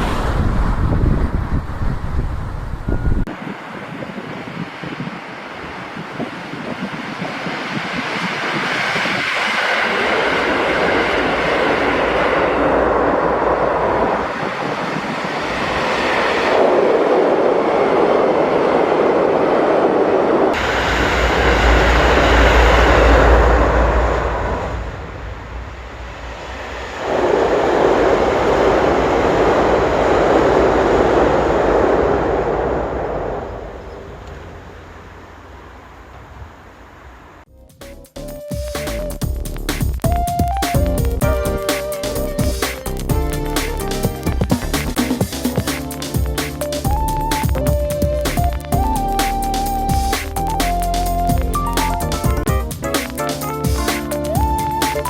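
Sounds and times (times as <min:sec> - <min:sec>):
train wheels on rails: 0:03.3 - 0:37.4, 0:39.1 - 0:55.0
diesel engine rumble: 0:20.6 - 0:37.4.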